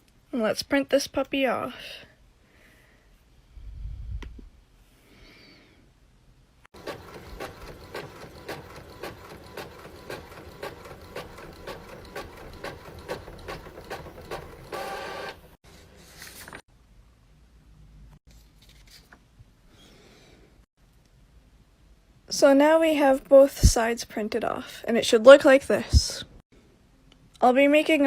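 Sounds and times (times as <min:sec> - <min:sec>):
printer clicking and clattering: 0:06.8 - 0:15.5.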